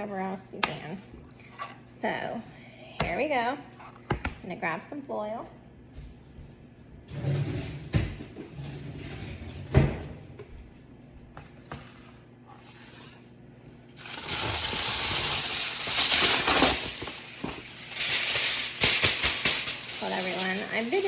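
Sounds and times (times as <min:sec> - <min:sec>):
aluminium foil crinkling: 0:13.8 - 0:21.0.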